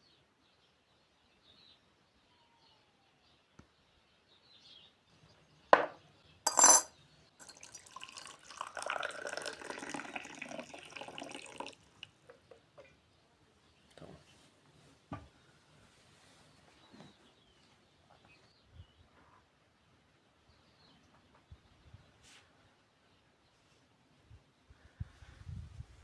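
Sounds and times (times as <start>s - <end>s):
sharp glass clinks: 6.5s - 7.8s
liquid pouring: 6.5s - 12.1s.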